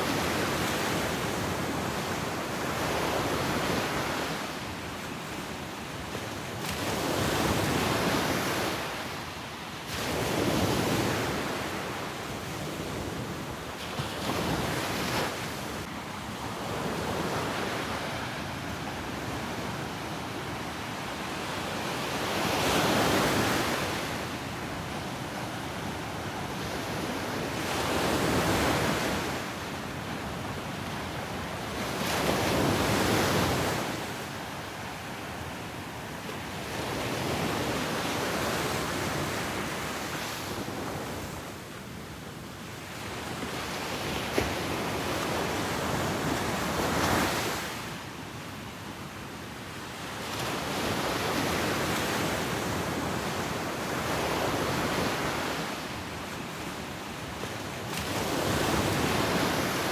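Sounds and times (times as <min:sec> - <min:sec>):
waves breaking on beach: 0:57.3 - 0:59.9.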